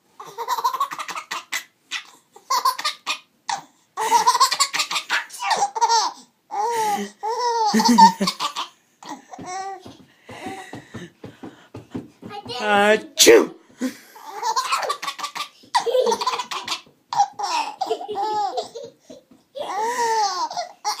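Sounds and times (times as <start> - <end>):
small child laughing: 0.2 - 9.8, 14.2 - 21.0.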